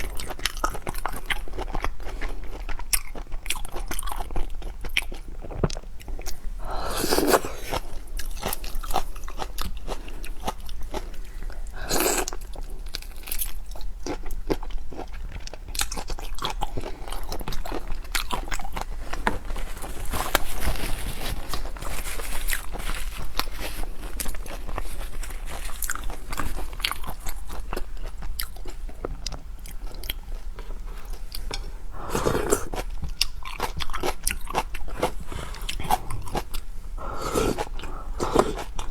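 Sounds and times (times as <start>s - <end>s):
crunching chewing sounds: 0.0s - 38.9s
wet slurping mouthfuls: 35.1s - 38.9s.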